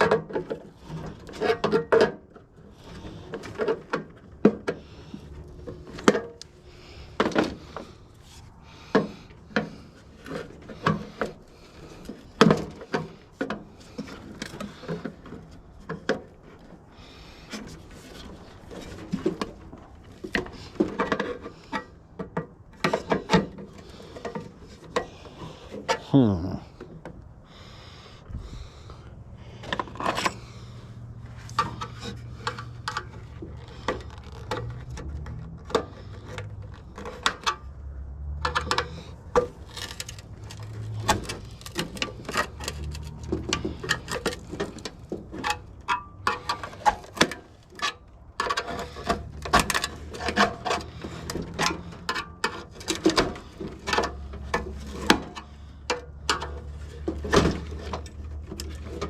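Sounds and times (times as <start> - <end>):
tools clicking and scraping metal: 38.4 - 59.0.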